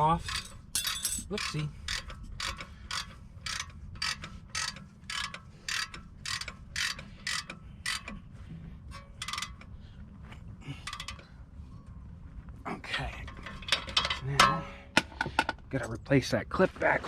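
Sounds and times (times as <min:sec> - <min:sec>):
ratchet wrench clicking: 0:00.0 - 0:08.2, 0:08.9 - 0:09.7, 0:10.8 - 0:11.3.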